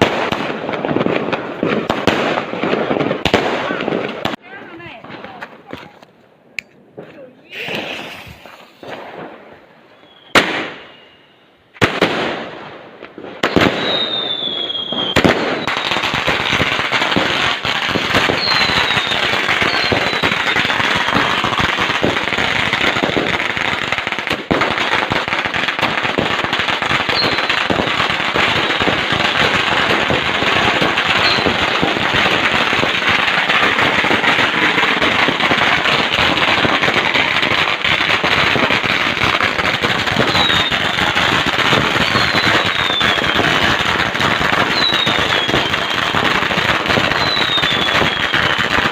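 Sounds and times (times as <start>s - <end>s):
firework bangs: 0.0s - 6.0s, 7.0s - 48.9s
firework crackle: 0.0s - 6.2s, 7.0s - 48.9s
firework whistles: 7.5s - 9.1s, 9.9s - 11.8s, 13.4s - 17.2s, 18.2s - 21.7s, 27.0s - 37.4s, 38.4s - 48.9s.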